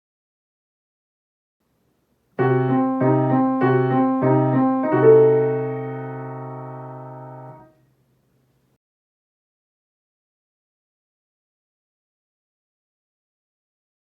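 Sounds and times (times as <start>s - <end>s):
piano suspense cue: 2.4s - 7.6s
loud piano chord ringing: 2.4s - 7.7s.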